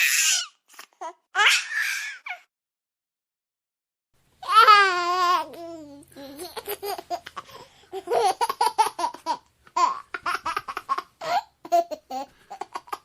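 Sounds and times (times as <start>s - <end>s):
baby squealing: 0.0s - 0.6s, 1.4s - 2.4s
baby giggling: 4.5s - 13.0s.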